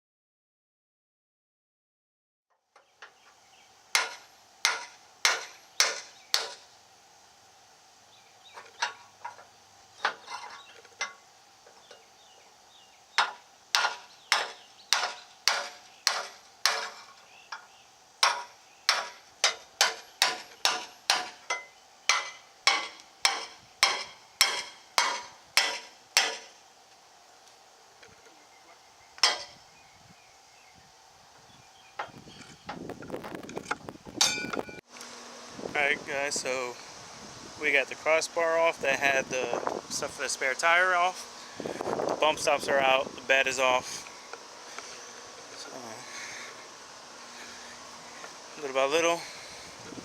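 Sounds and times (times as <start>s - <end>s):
hammer blows on metal: 13.2s - 17.6s, 18.2s - 26.6s, 34.2s - 34.8s.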